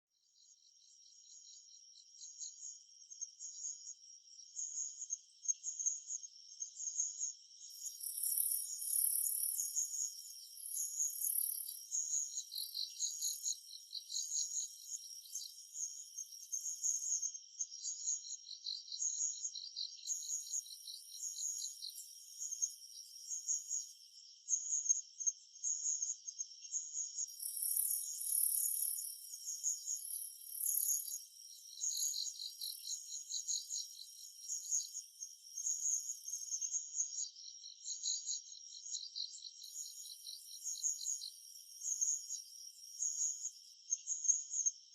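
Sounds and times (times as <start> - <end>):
insects chirping and trilling: 0.2 - 44.9.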